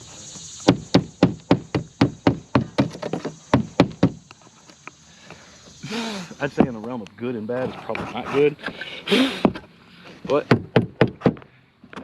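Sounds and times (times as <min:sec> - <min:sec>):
hammer striking nails into wood: 0:00.7 - 0:04.2, 0:10.4 - 0:11.4.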